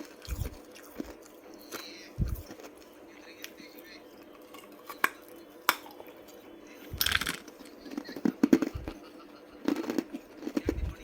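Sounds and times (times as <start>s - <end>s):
ice crunching between teeth: 9.6s - 11.0s.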